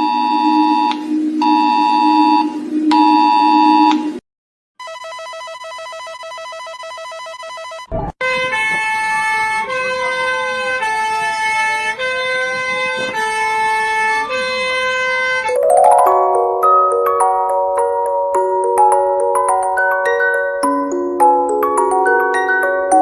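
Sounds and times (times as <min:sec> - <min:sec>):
pulsing buzzer tone: 0:00.0 - 0:04.2
siren wail: 0:00.0 - 0:04.2
synthesized tones: 0:00.0 - 0:04.2, 0:15.5 - 0:23.0.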